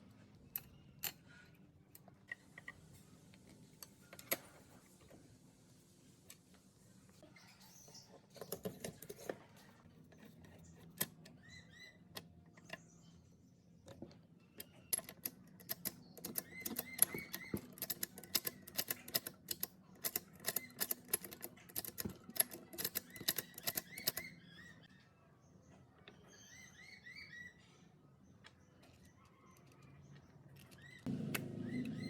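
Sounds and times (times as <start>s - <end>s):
birds chirping: 22.4s - 32.0s.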